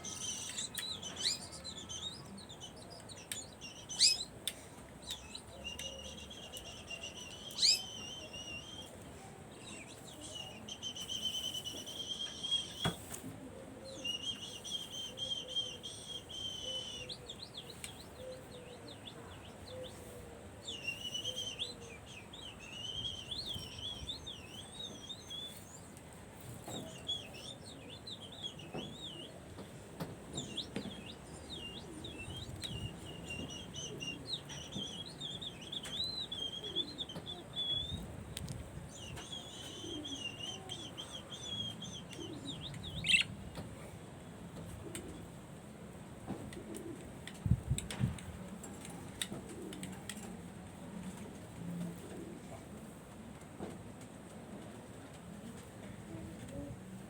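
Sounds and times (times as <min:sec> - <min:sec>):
budgerigars warbling and chattering: 0:00.0 - 0:04.3, 0:05.1 - 0:08.2, 0:38.9 - 0:43.3.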